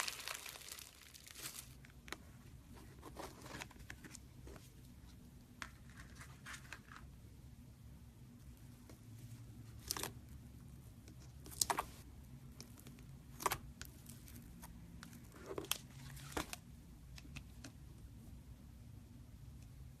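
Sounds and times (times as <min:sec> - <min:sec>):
crinkling and tearing: 0:00.0 - 0:02.0
low steady hum: 0:00.0 - 0:20.0.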